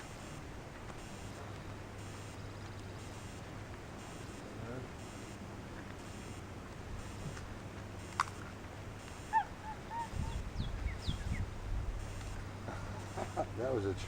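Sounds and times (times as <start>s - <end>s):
high animal chirps: 9.0s - 12.4s.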